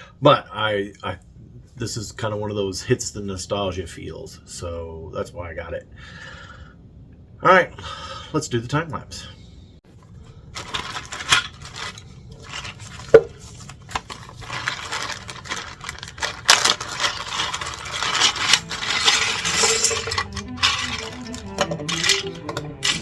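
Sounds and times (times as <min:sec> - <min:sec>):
plastic bricks clattering: 0:10.5 - 0:23.0.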